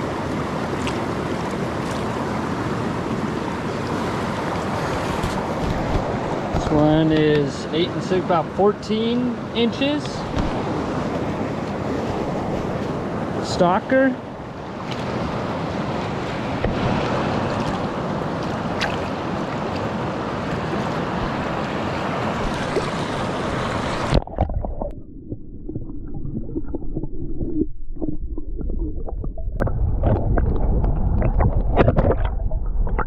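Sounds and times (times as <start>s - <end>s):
creek water rushing: 0.0s - 24.2s
low rumble with knocks: 24.1s - 33.0s.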